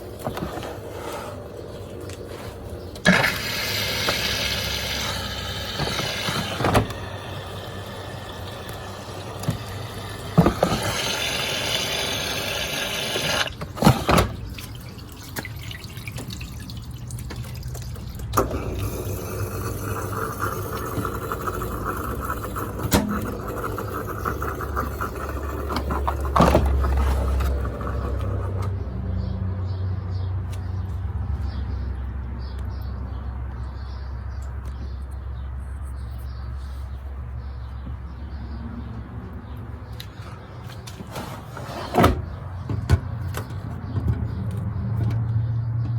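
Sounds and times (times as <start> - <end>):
washing machine sloshing water: 0.0 - 28.9, 40.1 - 45.0.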